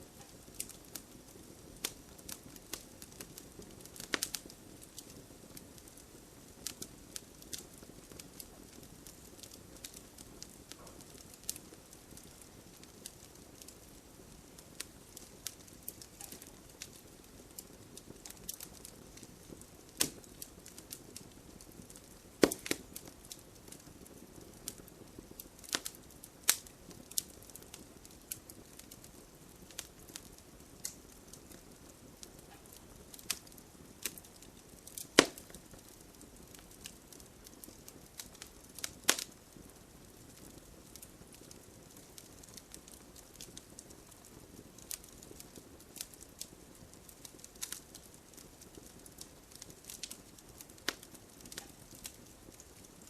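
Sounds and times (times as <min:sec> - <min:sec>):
campfire crackling and popping: 0:00.0 - 0:53.0
soft steady fire hiss: 0:00.0 - 0:53.0.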